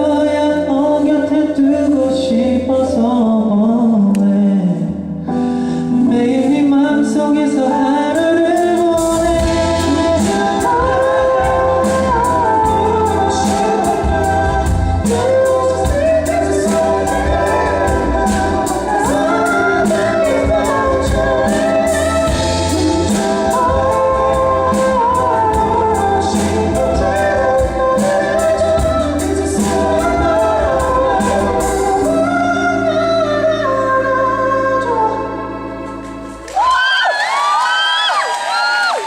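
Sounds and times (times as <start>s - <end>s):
man singing pop ballad: 0.0s - 35.4s
live band playing: 4.4s - 39.0s
audience screaming and cheering: 36.3s - 39.0s.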